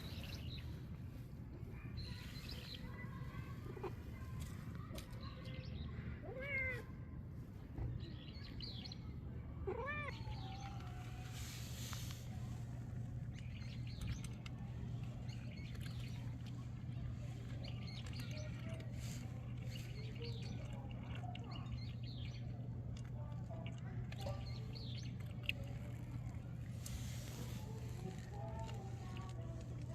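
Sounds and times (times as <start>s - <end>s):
cat meowing: 6.2s - 6.9s, 9.6s - 10.6s.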